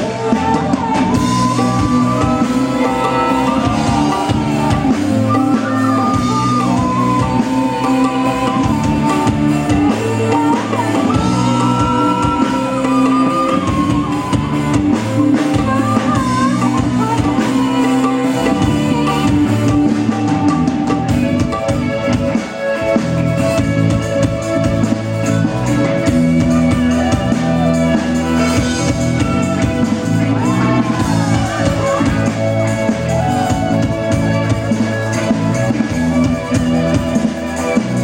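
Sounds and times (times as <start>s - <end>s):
live band playing: 0.0s - 38.0s.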